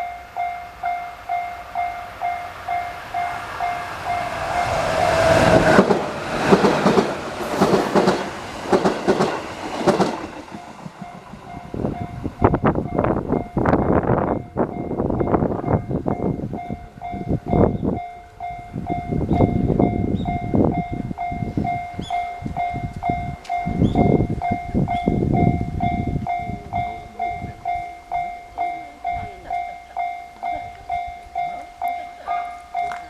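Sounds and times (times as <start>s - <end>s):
train wheels rumbling and knocking: 0.6s - 33.0s
level crossing bell ringing: 10.6s - 33.0s.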